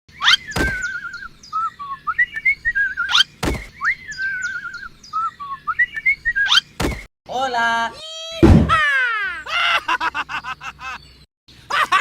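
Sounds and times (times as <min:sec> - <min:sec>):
bird-like chirps and whistles: 0:00.1 - 0:07.1
dull thump: 0:08.4 - 0:08.8.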